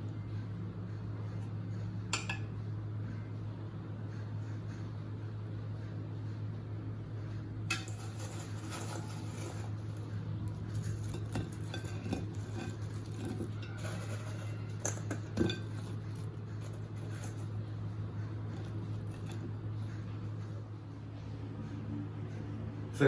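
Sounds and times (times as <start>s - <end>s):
steady low hum: 0.0s - 23.0s
utensils clinking on plates: 10.6s - 17.6s.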